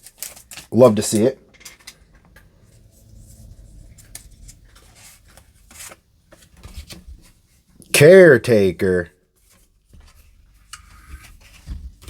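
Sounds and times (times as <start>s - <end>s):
foil wrapper and cards rustling: 0.0s - 1.3s.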